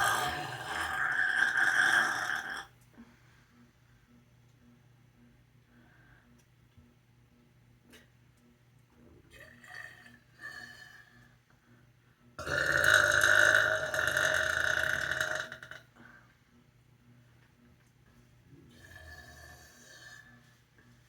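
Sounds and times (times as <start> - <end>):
person burping: 0.0 - 2.7, 12.4 - 15.9.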